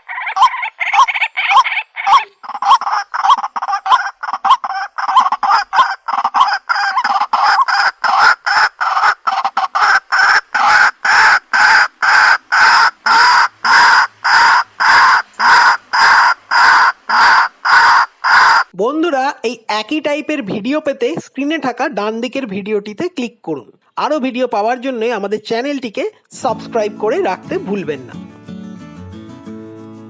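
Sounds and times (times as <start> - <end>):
waterhen calling: 0.0 - 18.8.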